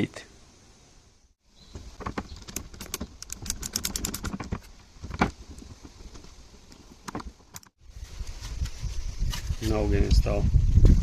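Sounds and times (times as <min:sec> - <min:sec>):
hand driver clicking: 0:02.4 - 0:04.5.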